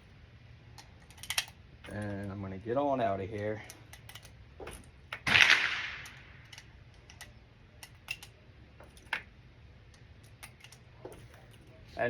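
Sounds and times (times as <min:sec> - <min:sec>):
gun handling clicks: 0:00.7 - 0:02.4, 0:03.3 - 0:09.3, 0:09.9 - 0:11.7
pistol shot: 0:05.2 - 0:06.4.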